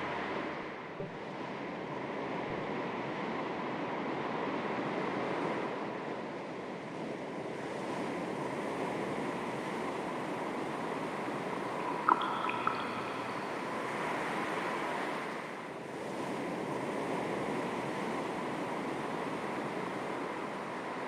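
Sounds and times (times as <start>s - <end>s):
sea waves lapping: 11.2s - 15.6s.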